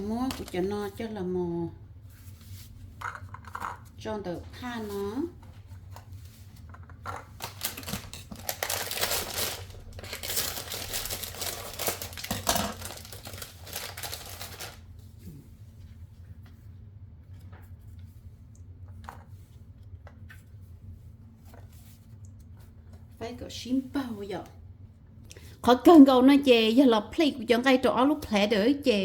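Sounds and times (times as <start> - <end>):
plastic packaging crinkling: 0.0 - 0.7, 7.2 - 14.9.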